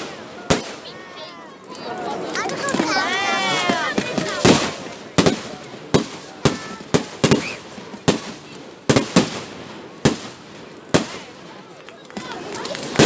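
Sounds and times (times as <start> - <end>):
firework bangs: 0.0 - 13.0.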